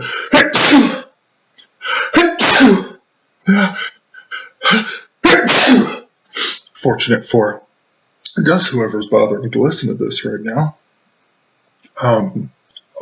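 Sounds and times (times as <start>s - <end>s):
man sneezing loudly: 0.0s - 1.1s, 1.8s - 6.7s.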